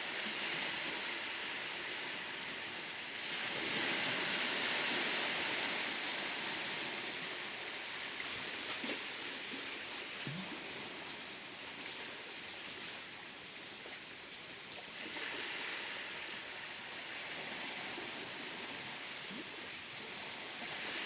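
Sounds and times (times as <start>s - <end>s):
sea waves washing: 0.0s - 13.2s, 14.8s - 21.0s.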